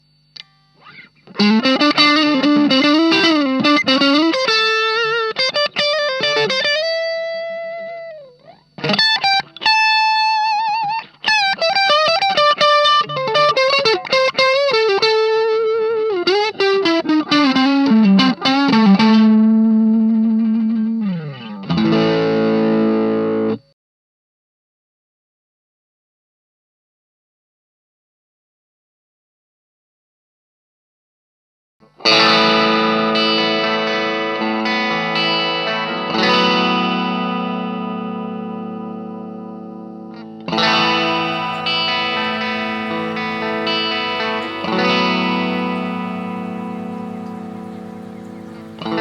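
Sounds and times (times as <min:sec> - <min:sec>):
overdriven electric guitar lead: 0:40.5 - 0:49.0
strummed guitar chord: 0:40.5 - 0:49.0.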